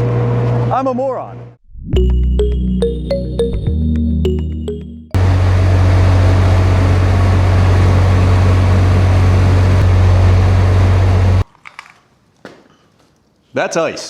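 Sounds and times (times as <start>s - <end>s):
engine-driven machine humming: 5.2s - 11.4s.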